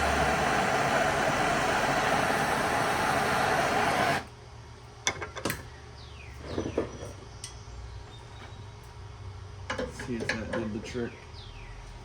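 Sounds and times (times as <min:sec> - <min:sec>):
blowtorch flame rushing: 0:00.0 - 0:04.4.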